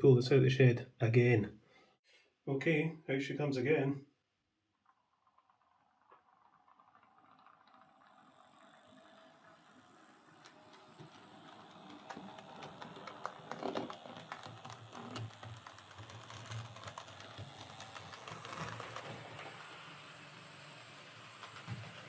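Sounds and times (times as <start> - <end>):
model train motor hum: 5.2 - 22.0
wheels clicking on rails: 5.2 - 22.0.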